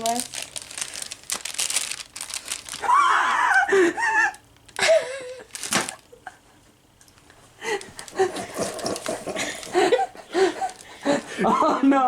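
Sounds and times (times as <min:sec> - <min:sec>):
breathy laughter: 0:03.1 - 0:05.5, 0:07.6 - 0:11.8.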